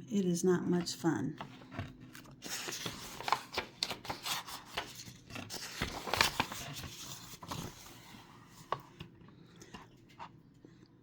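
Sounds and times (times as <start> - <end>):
book pages rustling: 1.4 - 10.3.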